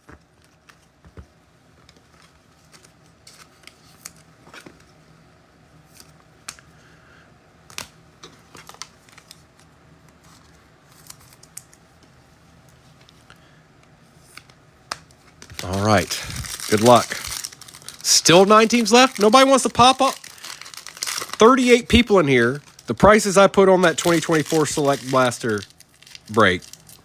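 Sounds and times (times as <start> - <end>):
faint room hum: 0.0 - 27.0
trading cards being handled: 7.7 - 13.3, 14.1 - 27.0.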